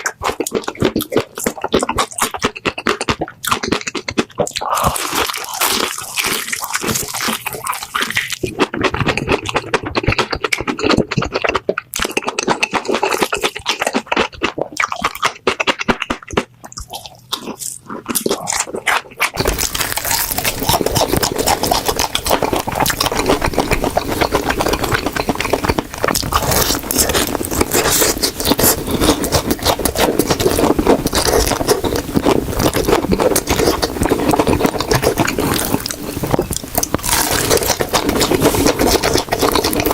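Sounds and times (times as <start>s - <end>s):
crunching and chewing fried chicken: 0.0s - 39.9s.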